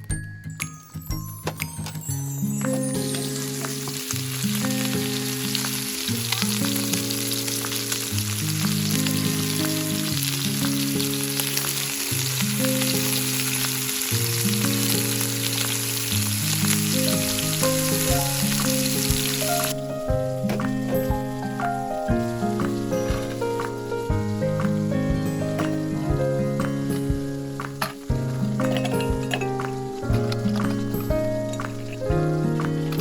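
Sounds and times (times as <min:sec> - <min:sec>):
food sizzling: 0:01.7 - 0:33.0
slow low-note music: 0:11.2 - 0:33.0.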